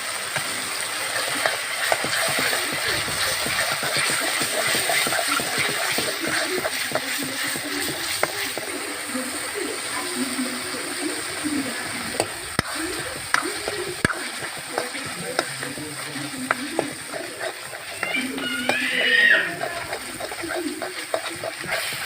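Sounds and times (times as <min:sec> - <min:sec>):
food sizzling in a pan: 0:00.0 - 0:22.0
spoon scraping and clinking pan: 0:01.2 - 0:08.6, 0:12.2 - 0:22.0.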